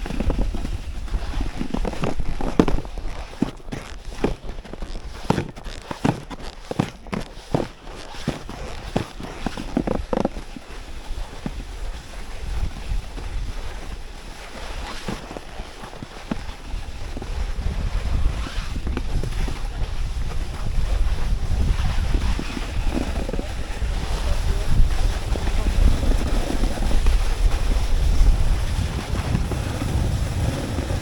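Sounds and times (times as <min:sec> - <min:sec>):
wind buffeting microphone: 0:00.0 - 0:03.2, 0:16.6 - 0:31.0
snowboard sliding over snow: 0:00.0 - 0:31.0.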